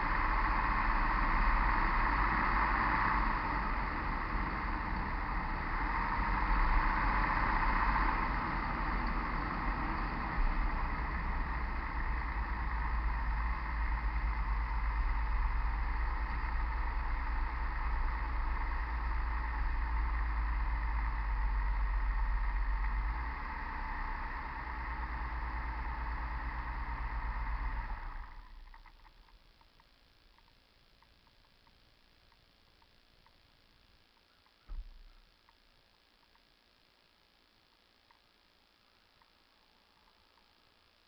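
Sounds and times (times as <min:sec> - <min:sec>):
vehicle running on road: 0:00.0 - 0:29.4
low rumble: 0:00.0 - 0:31.5.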